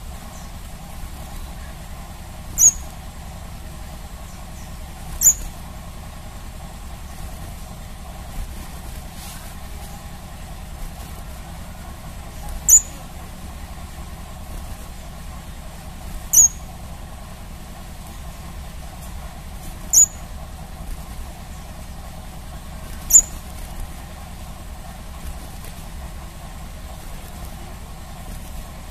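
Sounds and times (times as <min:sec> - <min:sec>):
steady low hum: 0:00.0 - 0:28.9
high-pitched bird chirps: 0:02.6 - 0:02.9, 0:04.3 - 0:05.6, 0:12.5 - 0:13.0, 0:16.3 - 0:16.7, 0:19.9 - 0:20.3, 0:23.1 - 0:23.4.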